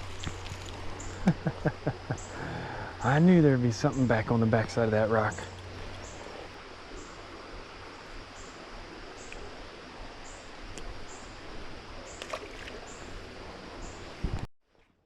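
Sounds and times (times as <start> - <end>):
creek water running: 0.0 - 14.3.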